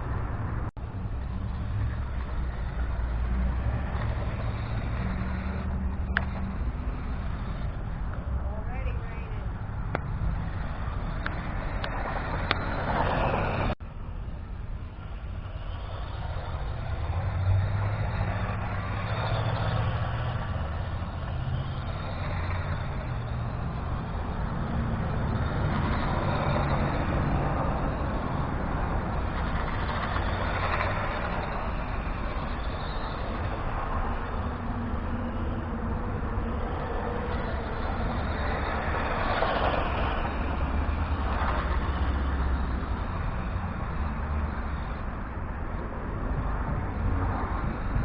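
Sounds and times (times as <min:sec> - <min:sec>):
tyres running over ground: 0:00.0 - 0:48.0
rc truck motor and gears whirring: 0:14.8 - 0:48.0.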